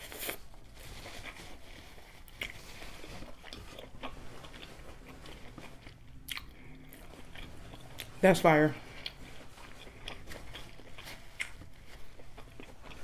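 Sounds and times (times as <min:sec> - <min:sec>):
person chewing: 0:00.0 - 0:13.0
wet mouth clicks: 0:06.2 - 0:07.0.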